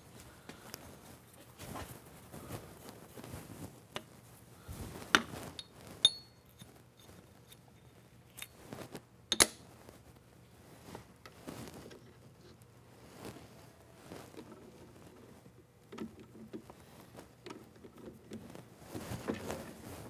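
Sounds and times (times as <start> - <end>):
metal tools clinking: 5.6 - 7.1
sharp ringing metal strikes: 6.0 - 6.4.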